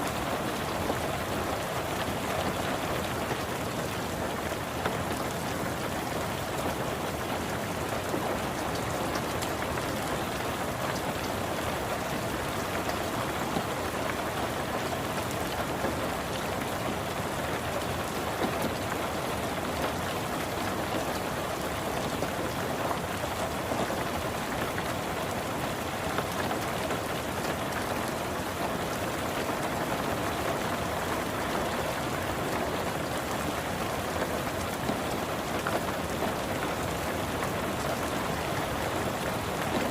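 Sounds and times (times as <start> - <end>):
rain on a car roof: 0.0 - 39.9.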